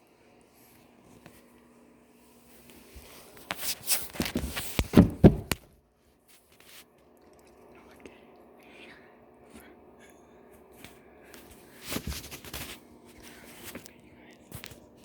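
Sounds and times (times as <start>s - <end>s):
knocks and rattling: 4.9s - 5.7s.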